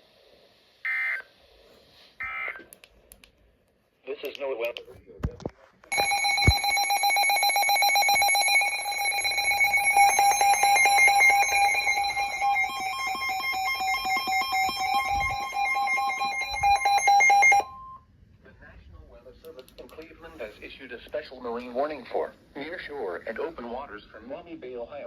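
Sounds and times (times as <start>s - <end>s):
shrill electronic alarm beeping: 5.9s - 18.0s
steady alert tone: 8.2s - 18.0s.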